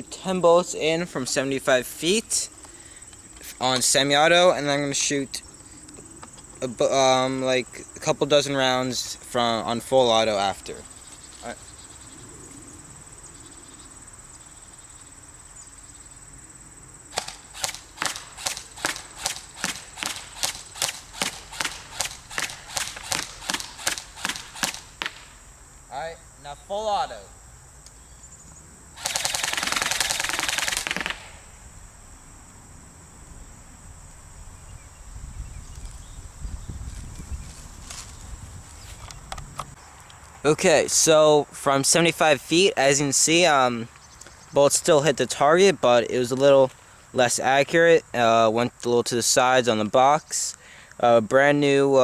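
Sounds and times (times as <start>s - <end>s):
crickets chirping: 0.0s - 52.0s
airsoft rifle shots: 17.1s - 25.4s, 29.0s - 31.6s.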